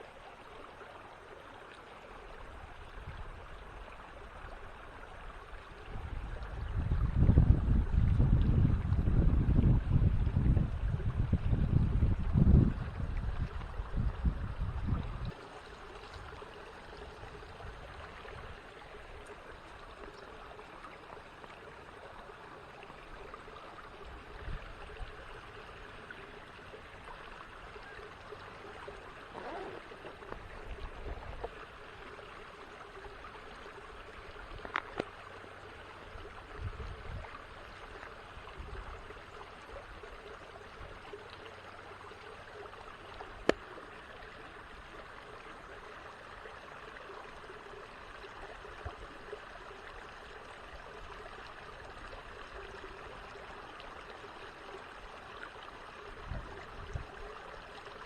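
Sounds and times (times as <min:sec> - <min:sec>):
creek trickling: 0:00.0 - 0:58.0.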